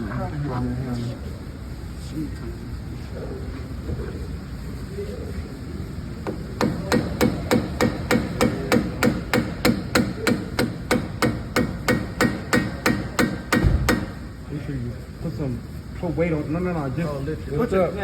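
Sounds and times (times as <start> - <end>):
hammer blows on metal: 6.3 - 14.4.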